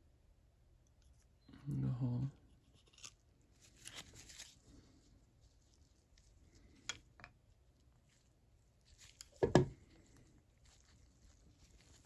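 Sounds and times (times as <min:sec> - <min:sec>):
faint handling noise: 0:02.4 - 0:12.0.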